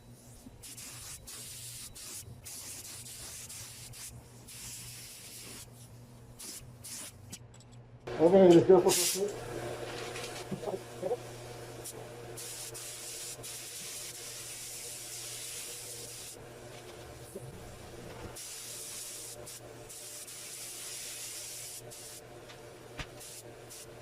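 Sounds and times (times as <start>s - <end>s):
paint spray gun hissing: 0.6s - 5.8s, 6.4s - 7.2s, 11.8s - 16.4s, 18.4s - 22.2s, 23.2s - 24.0s.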